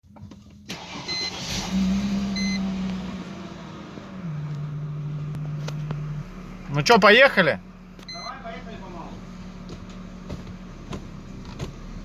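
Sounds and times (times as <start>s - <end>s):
electronic dashboard beeps: 0.7s - 2.8s, 6.8s - 8.6s
car engine idling: 0.7s - 12.0s.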